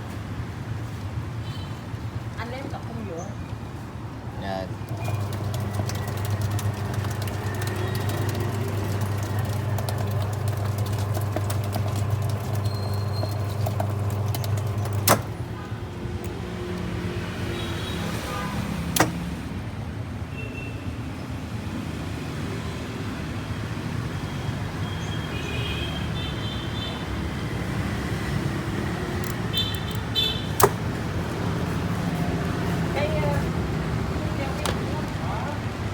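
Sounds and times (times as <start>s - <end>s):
washing machine humming: 4.4s - 19.7s, 25.4s - 35.9s
sharp switch click: 19.0s - 19.2s.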